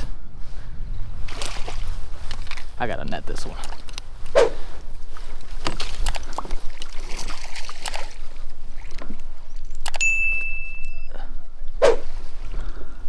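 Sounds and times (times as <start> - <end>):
water splashing: 1.2 - 9.4
high steady tone: 10.0 - 11.2.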